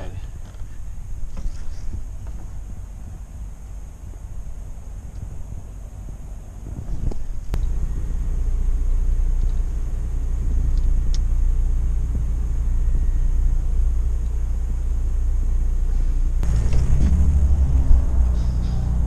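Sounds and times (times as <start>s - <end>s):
vehicle engine idling: 7.2s - 19.0s.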